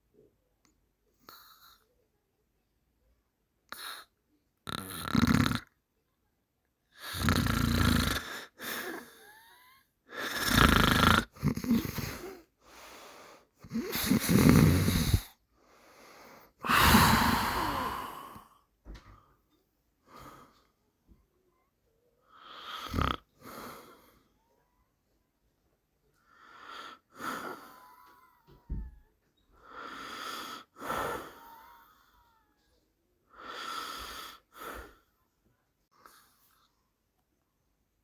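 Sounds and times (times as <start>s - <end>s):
person snoring loudly: 4.7s - 5.7s, 7.0s - 8.3s, 10.2s - 12.3s, 13.6s - 15.3s, 16.6s - 18.4s, 22.5s - 23.2s
faint breaths: 11.6s - 24.9s, 26.0s - 37.0s.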